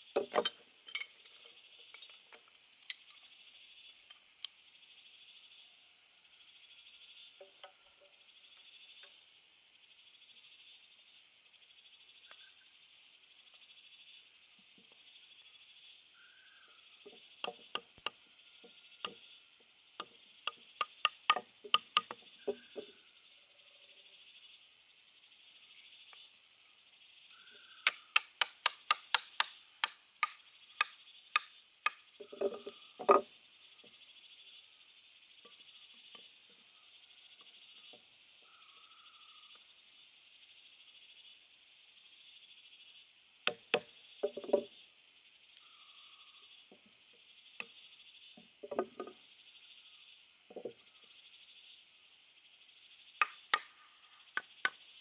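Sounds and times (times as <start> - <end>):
high insect hiss: 0.0 - 55.0
sharp wooden taps: 27.8 - 33.2.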